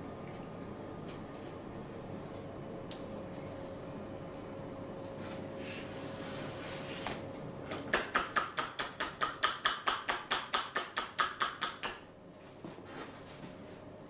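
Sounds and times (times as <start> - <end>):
hands tapping on body: 7.7 - 12.0.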